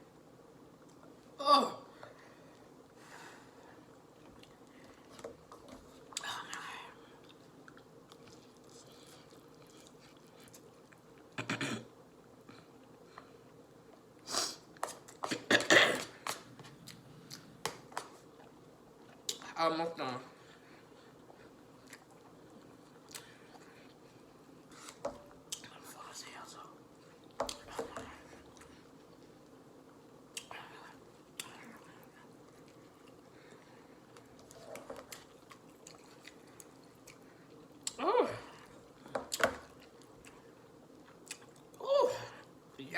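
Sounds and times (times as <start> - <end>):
chewing: 7.2 - 11.4, 16.2 - 19.5, 20.6 - 25.8, 27.0 - 38.0, 38.6 - 41.8.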